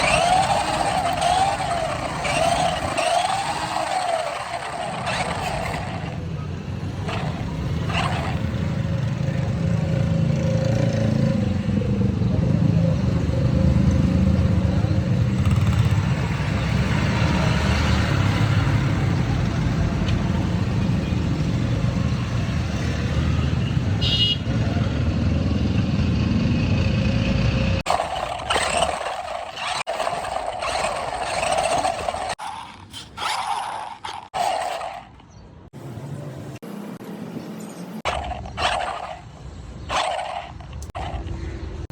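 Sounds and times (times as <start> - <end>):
motor vehicle rumbling: 0.0 - 41.9.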